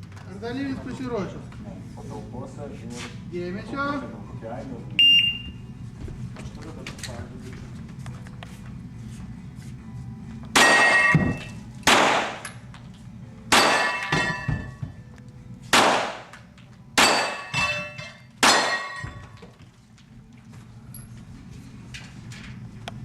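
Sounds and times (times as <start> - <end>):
metallic clang of steel targets: 10.6 - 12.6, 13.5 - 14.7, 17.0 - 19.4
handgun shots: 11.8 - 12.5, 15.7 - 16.4.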